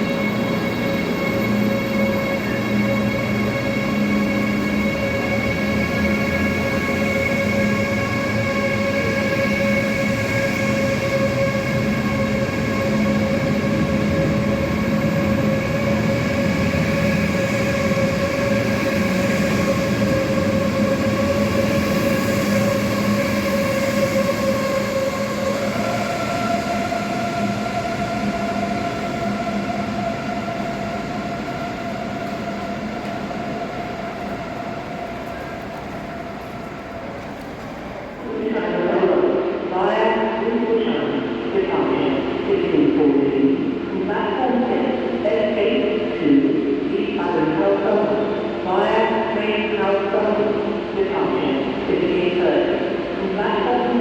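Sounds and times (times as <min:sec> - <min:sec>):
train rumble: 0:00.0 - 0:39.6
electric train whine: 0:00.0 - 0:39.7.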